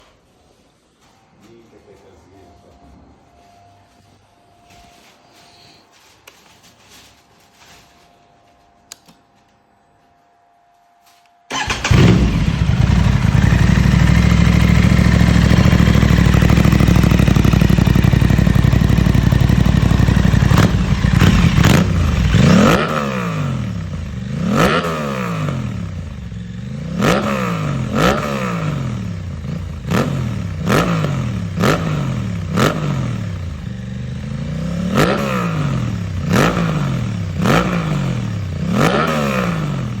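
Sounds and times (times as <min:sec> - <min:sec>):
motorcycle engine idling and revving: 0:11.5 - 0:40.0.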